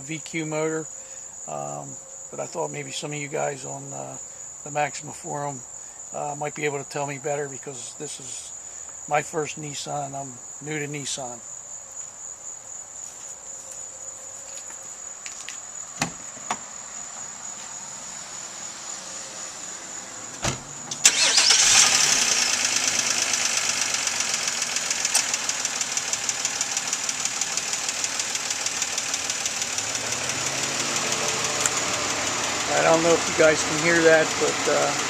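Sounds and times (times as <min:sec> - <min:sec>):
crickets chirping: 0:00.0 - 0:35.0
car engine starting and idling: 0:18.5 - 0:35.0
fast even engine ticking: 0:21.1 - 0:35.0.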